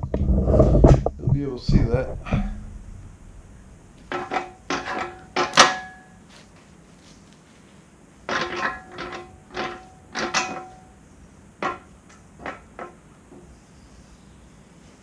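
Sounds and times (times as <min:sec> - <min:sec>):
heavy steel parts clanking: 0:00.0 - 0:06.0.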